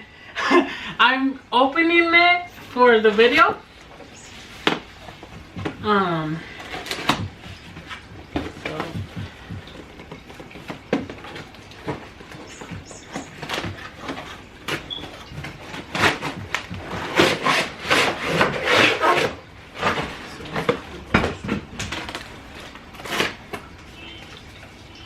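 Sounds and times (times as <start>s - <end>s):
packaging being scraped and handled: 6.4s - 21.0s, 21.8s - 23.7s.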